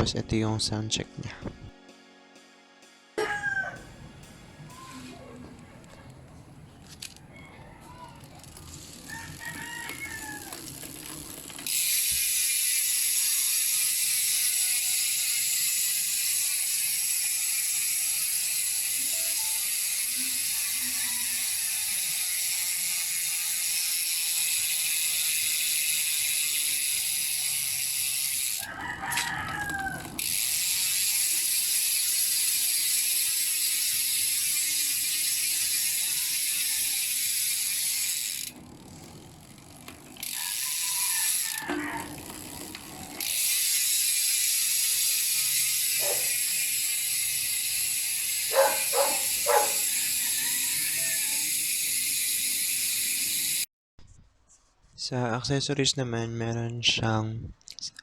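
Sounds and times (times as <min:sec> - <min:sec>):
rooster crowing: 0:03.2 - 0:04.0, 0:07.3 - 0:11.0, 0:20.8 - 0:22.2, 0:28.6 - 0:30.4, 0:40.3 - 0:42.7, 0:48.4 - 0:52.0
bicycle hub freewheel buzz: 0:03.7 - 0:53.7.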